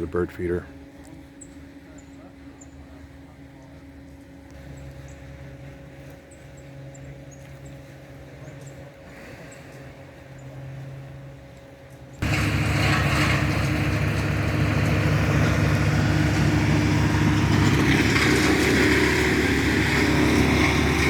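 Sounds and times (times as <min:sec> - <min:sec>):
large engine running: 0:12.2 - 0:21.0.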